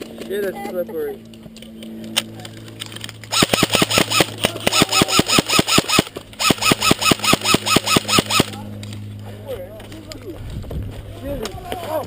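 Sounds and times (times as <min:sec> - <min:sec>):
airsoft gun firing full-auto: 0:03.3 - 0:08.6.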